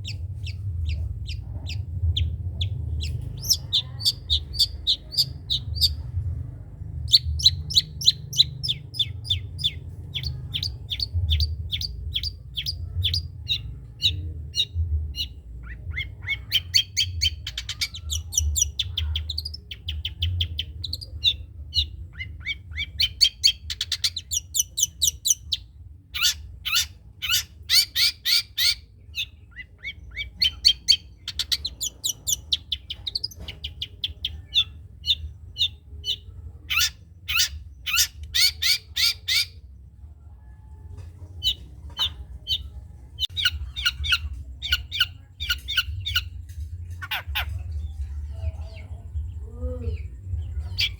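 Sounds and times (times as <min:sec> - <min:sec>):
bird singing high chirps: 0:00.0 - 0:06.2, 0:07.1 - 0:39.6, 0:41.4 - 0:50.9
steady low hum: 0:00.0 - 0:50.9.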